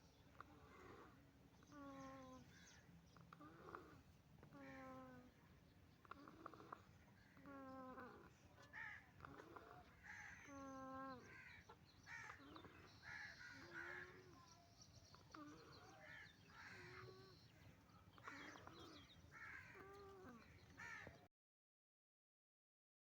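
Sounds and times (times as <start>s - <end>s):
chicken snoring: 3.4s - 4.1s, 6.1s - 8.3s.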